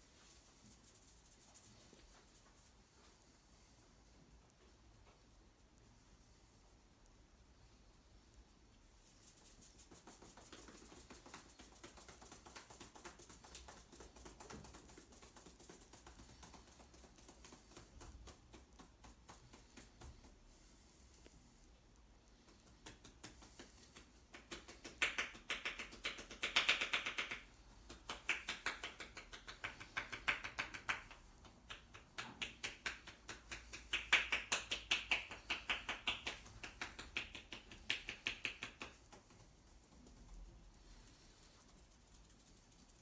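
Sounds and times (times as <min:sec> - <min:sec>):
hands slapping on body: 0:09.3 - 0:20.7, 0:22.4 - 0:40.1.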